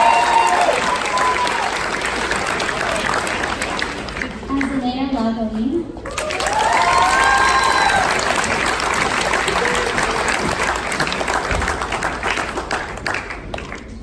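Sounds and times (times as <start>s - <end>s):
person cheering: 0.0s - 1.7s, 6.2s - 8.2s
audience applauding: 0.0s - 4.8s, 6.0s - 14.0s.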